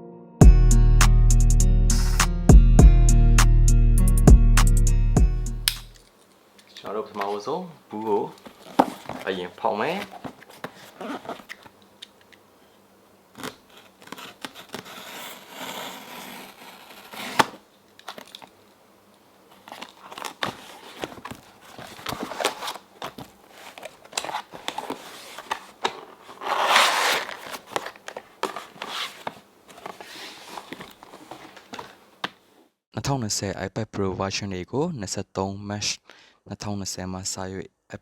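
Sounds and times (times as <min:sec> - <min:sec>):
packaging tearing and crinkling: 0:13.4 - 0:18.6, 0:19.5 - 0:32.0.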